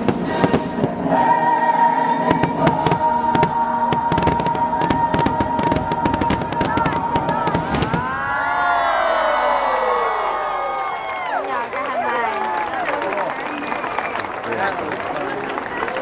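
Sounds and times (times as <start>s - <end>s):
firework bangs and crackles: 0.0s - 1.1s, 2.2s - 8.3s
crowd cheering: 5.4s - 16.0s.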